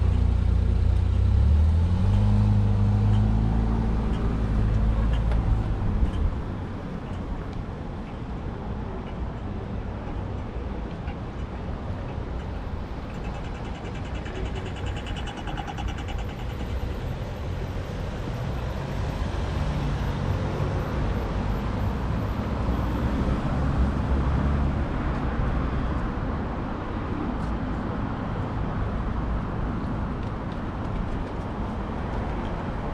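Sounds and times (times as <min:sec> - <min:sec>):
traffic rumbling past: 0:12.3 - 0:28.5.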